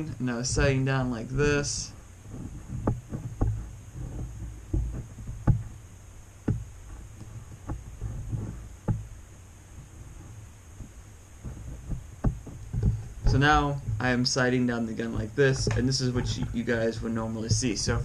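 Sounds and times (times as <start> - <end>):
low steady hum: 0.0 - 18.0
rifle handling knocks and bumps: 15.0 - 18.0.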